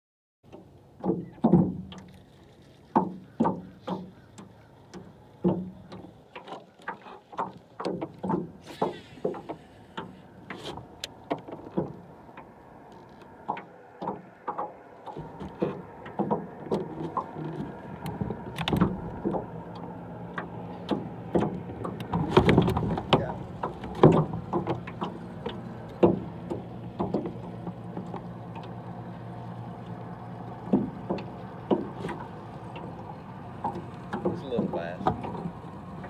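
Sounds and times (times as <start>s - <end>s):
fishing gear knocking on boat: 3.0s - 6.6s, 13.4s - 19.8s, 20.4s - 28.3s, 30.6s - 33.0s, 33.6s - 35.7s.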